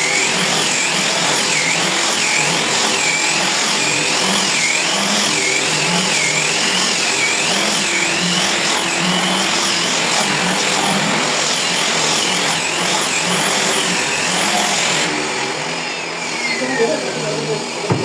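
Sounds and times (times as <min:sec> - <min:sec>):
angle grinder whining: 0:00.0 - 0:18.0.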